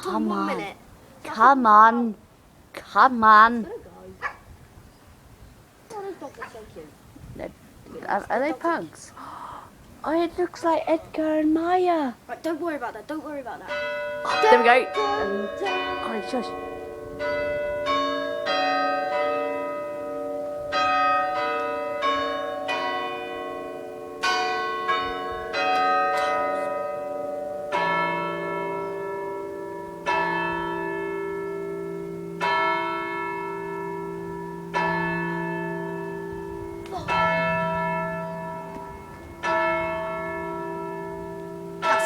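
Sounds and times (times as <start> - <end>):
church bells chiming a tune: 13.7 - 42.0
deep bell striking the hour: 13.7 - 42.0.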